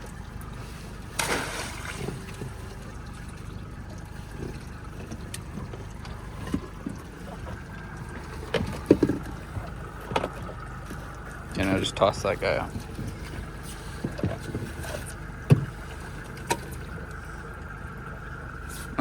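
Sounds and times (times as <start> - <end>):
small boat engine rumble: 0.0 - 19.0.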